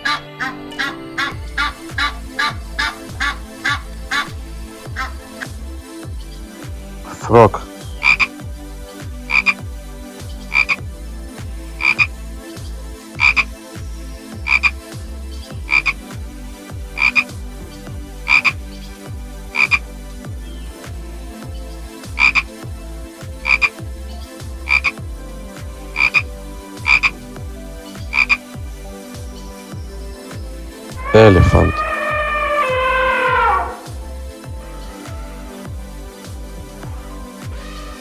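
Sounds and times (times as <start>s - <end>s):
frog croaking: 0.0s - 4.4s, 7.1s - 8.4s, 9.3s - 9.6s, 10.5s - 10.8s, 11.8s - 12.1s, 13.2s - 13.5s, 14.4s - 14.8s, 15.7s - 16.0s, 17.0s - 17.3s, 18.3s - 18.6s, 19.6s - 19.9s, 22.2s - 22.6s, 23.4s - 23.8s, 24.7s - 25.0s, 26.0s - 26.2s, 26.8s - 27.2s, 28.1s - 28.5s, 30.9s - 34.0s.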